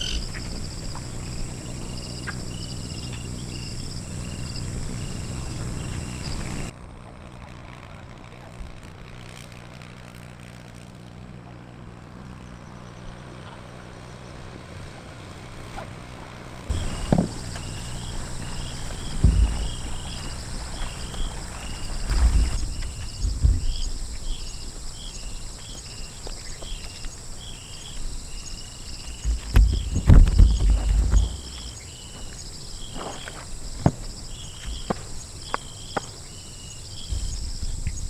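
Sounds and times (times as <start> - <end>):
frogs calling: 0.0 - 6.7, 16.7 - 38.0
heavy thumps: 0.0 - 6.7, 16.7 - 38.0.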